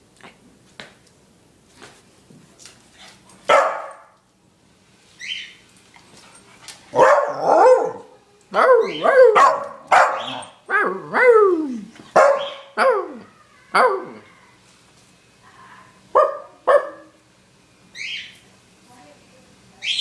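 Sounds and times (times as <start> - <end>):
dog making drawn-out barks: 3.5 - 4.0, 7.0 - 8.0, 9.3 - 10.4, 12.2 - 12.6
dog barking: 3.5 - 4.1, 7.0 - 10.5, 12.2 - 13.2, 16.1 - 17.2.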